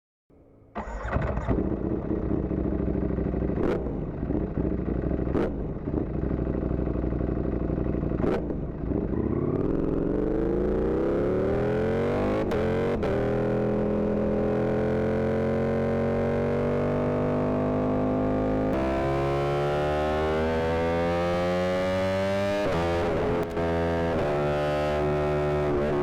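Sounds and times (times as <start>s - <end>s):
motorcycle engine idling: 0.8s - 9.6s.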